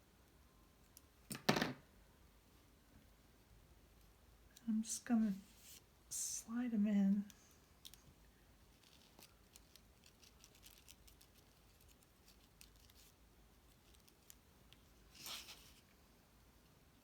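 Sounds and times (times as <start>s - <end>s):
paper clicks and rustles: 8.7s - 15.8s.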